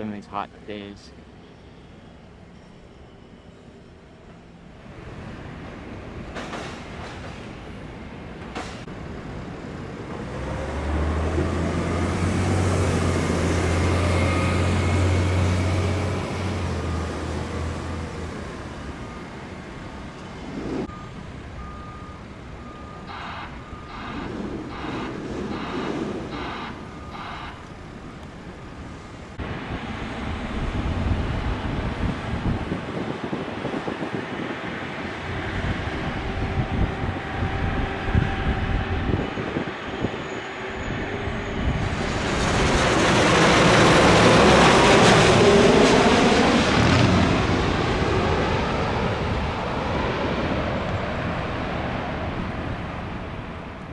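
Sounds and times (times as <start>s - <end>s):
low vehicle rumble: 8.2s - 32.9s
jet airliner passing overhead: 8.9s - 53.9s
wind buffeting microphone: 19.4s - 53.9s
reversing alarm pulses: 20.3s - 29.1s.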